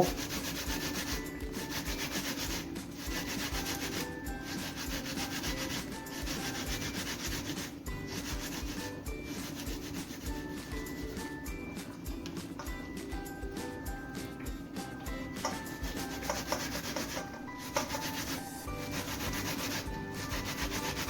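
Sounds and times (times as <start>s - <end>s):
banana grated on a grater: 0.0s - 11.5s, 15.4s - 21.0s.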